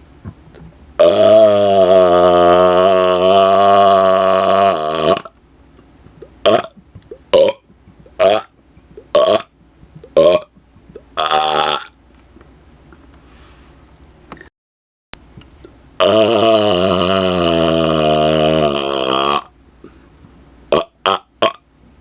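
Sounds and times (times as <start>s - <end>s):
man burping: 0.2s - 5.3s, 6.2s - 12.0s, 16.0s - 19.5s, 20.7s - 21.6s.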